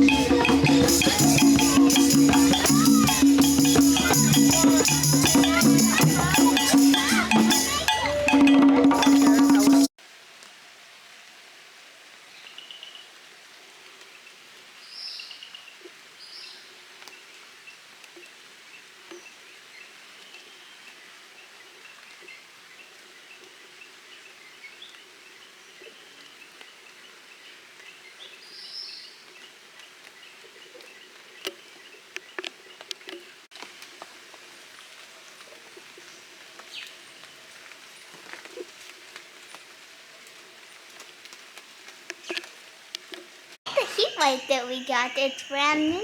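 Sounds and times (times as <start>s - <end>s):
bird chirps: 43.7s - 46.0s.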